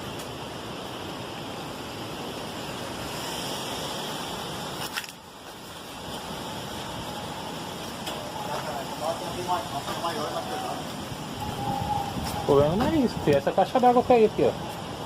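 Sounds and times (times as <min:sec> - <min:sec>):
strong wind on microphone: 0:06.4 - 0:15.0.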